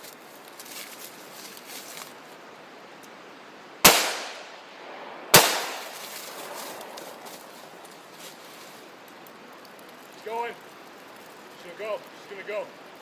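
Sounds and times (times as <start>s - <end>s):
shotgun shots echoing: 3.8s - 7.2s.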